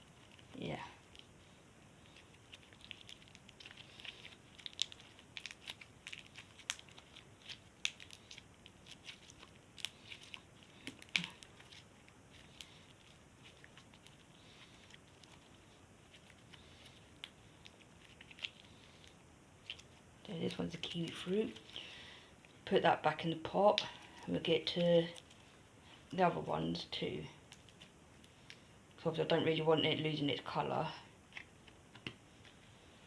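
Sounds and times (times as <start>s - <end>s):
slime crackling and popping: 2.3s - 15.4s.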